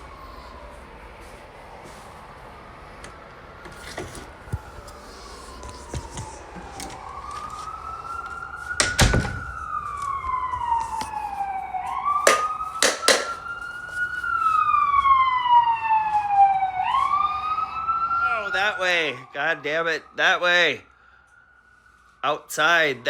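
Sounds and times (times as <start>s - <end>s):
emergency vehicle siren wailing: 0.0s - 23.0s
sharp knocks: 12.3s - 13.5s.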